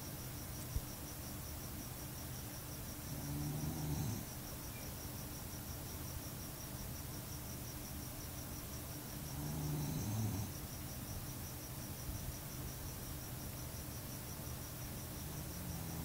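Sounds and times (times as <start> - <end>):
dog snoring: 3.1 - 4.3, 9.2 - 10.6, 15.2 - 16.0.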